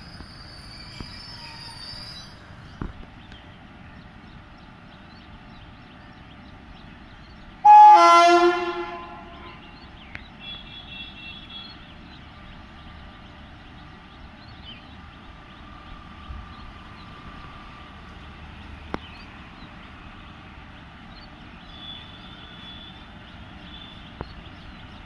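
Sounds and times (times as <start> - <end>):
locomotive air horn blast: 7.6 - 9.6.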